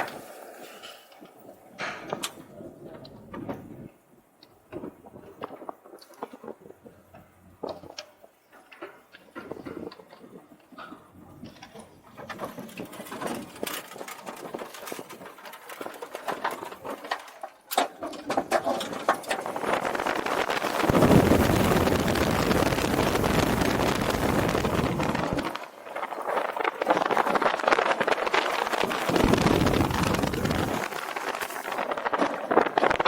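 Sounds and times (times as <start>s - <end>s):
rushing wind noise: 19.2s - 33.0s.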